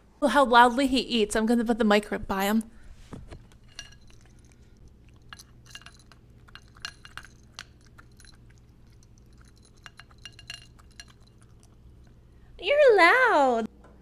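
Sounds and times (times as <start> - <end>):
cat chewing: 2.9 - 12.6
light clinks: 3.4 - 12.2.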